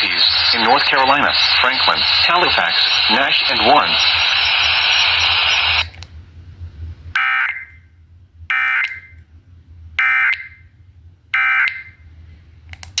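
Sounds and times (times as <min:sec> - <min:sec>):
faint low hum: 0:00.0 - 0:05.8.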